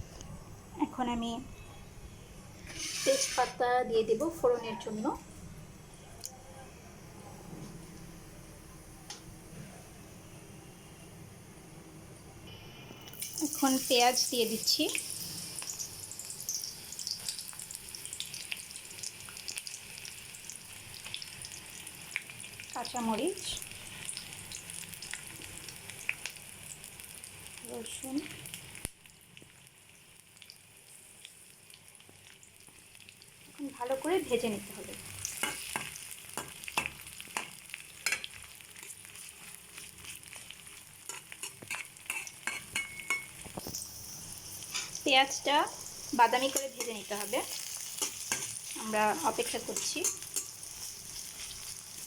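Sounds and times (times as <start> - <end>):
onions sizzling in hot oil: 2.5 - 5.1, 12.5 - 52.0
spoon scraping a pan: 2.6 - 3.6, 41.0 - 43.8, 44.4 - 45.0, 46.1 - 52.0.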